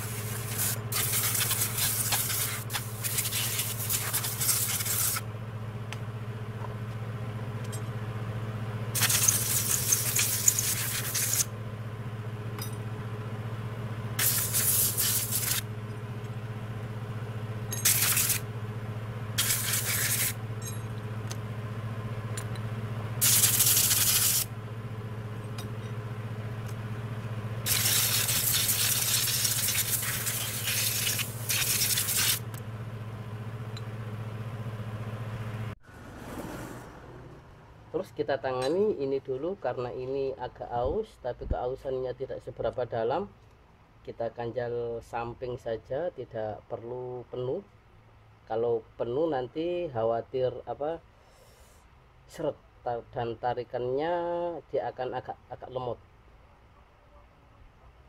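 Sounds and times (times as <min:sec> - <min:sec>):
compressed air blow gun hissing: 0:00.0 - 0:05.2, 0:09.0 - 0:11.5, 0:14.2 - 0:15.7, 0:17.8 - 0:18.5, 0:19.4 - 0:20.4, 0:23.2 - 0:24.5, 0:27.6 - 0:32.5
steady low hum: 0:00.0 - 0:35.8.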